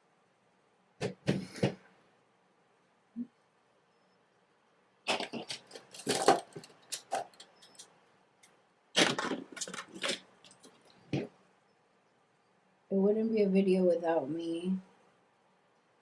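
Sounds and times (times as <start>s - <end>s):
makeup items clattering: 5.1s - 7.9s, 9.0s - 11.3s.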